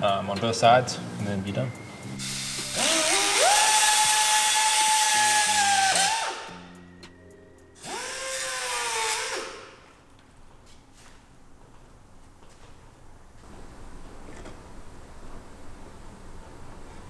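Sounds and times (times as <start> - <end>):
power cutting tool whining: 2.0 - 6.7, 7.8 - 9.8.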